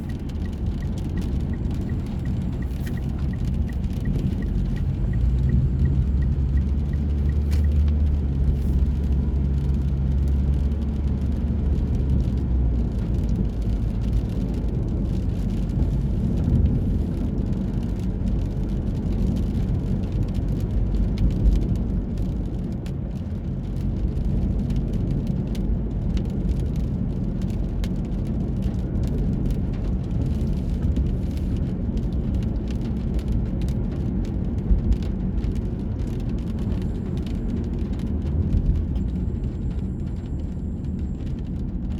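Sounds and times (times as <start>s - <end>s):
light ticks: 0.0s - 23.0s
light rain: 0.0s - 41.9s
low rumble of vehicle noise: 0.0s - 41.9s.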